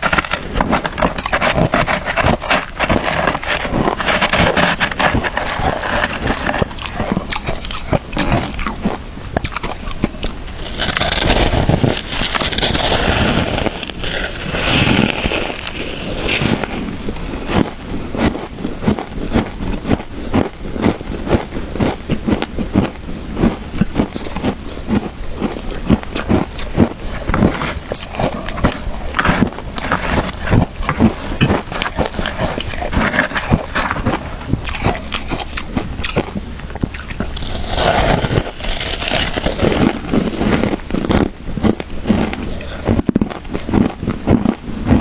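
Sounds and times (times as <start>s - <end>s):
shaved ice crunching: 0.0s - 17.7s, 37.0s - 43.0s.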